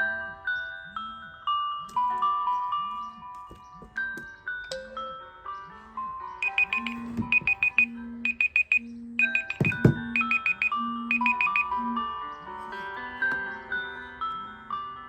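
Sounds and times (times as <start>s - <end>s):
phone alarm ringtone: 6.4s - 12.2s.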